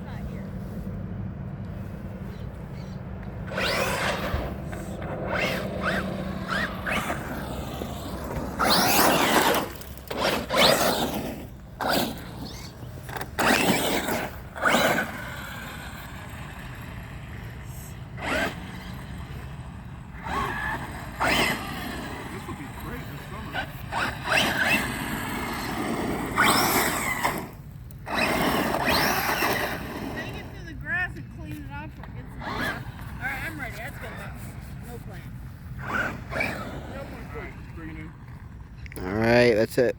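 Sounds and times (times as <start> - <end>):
tyres scraping: 2.0 - 39.2
electric motor whining: 3.2 - 30.7.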